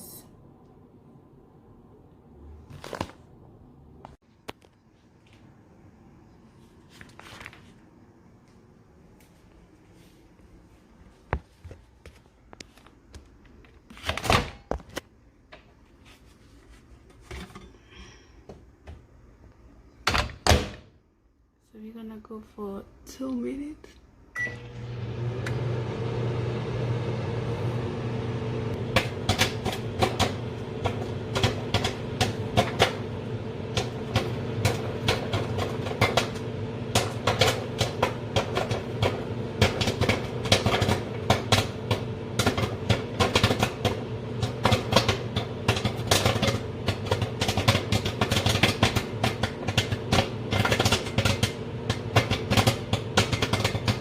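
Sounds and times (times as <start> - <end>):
microwave oven humming: 24.3 - 54.0
popcorn popping: 28.7 - 54.0.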